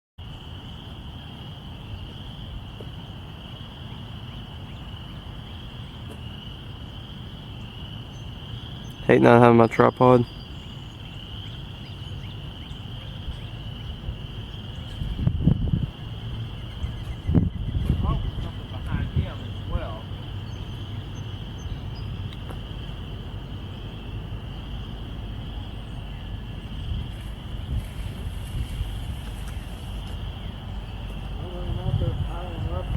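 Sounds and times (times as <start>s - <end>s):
crickets trilling: 0.2s - 32.9s
low background rumble: 10.3s - 32.9s.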